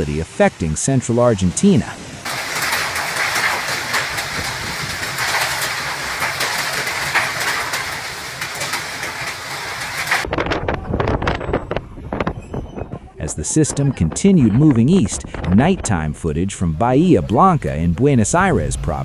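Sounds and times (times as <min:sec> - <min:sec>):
heavy rain with wind: 0:00.1 - 0:10.3, 0:16.2 - 0:19.0
sharp spattering impacts: 0:02.2 - 0:10.3.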